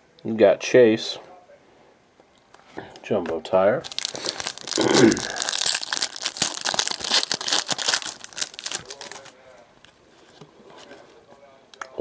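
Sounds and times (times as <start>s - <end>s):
wrapper crinkling and tearing: 3.8s - 9.5s.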